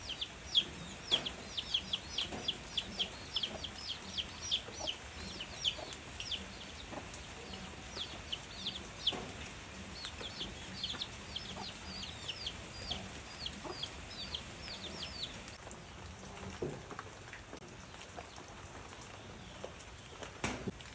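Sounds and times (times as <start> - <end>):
chicks peeping: 0.0 - 15.6
gentle rain hiss: 0.0 - 20.9.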